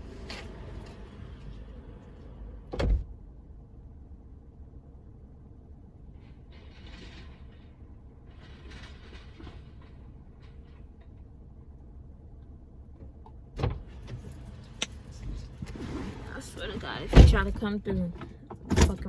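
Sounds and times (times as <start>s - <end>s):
car cabin rumble: 0.0s - 4.7s, 10.9s - 19.0s.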